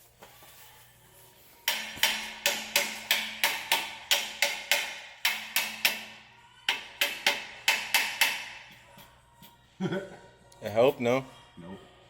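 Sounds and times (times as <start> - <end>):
hammer striking metal: 1.6 - 9.1.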